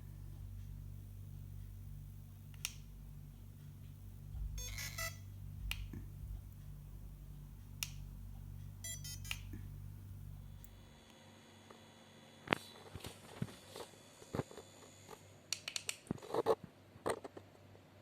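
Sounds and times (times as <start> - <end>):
gimbal motor humming: 0.0 - 11.1.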